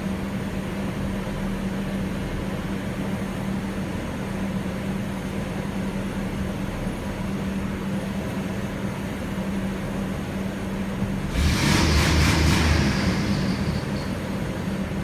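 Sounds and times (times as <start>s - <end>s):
steady mechanical hum: 0.0s - 15.0s
rough pulsing mechanical sound: 10.9s - 15.0s.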